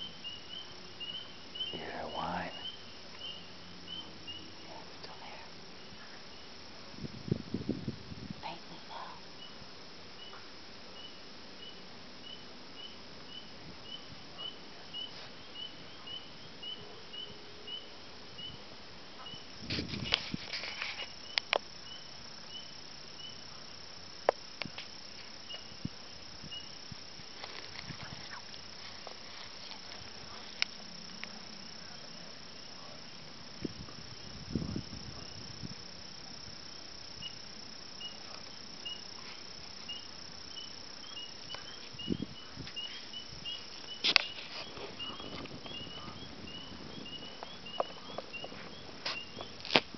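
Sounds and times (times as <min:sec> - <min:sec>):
insects droning and chirping: 0:00.0 - 0:49.9
rustling: 0:19.5 - 0:21.8, 0:26.9 - 0:31.8, 0:41.5 - 0:49.9.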